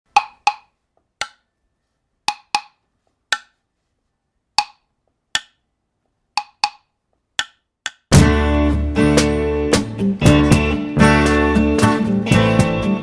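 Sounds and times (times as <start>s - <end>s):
wood block knocks: 0.1s - 1.5s, 2.3s - 3.6s, 4.6s - 5.6s, 6.4s - 8.1s.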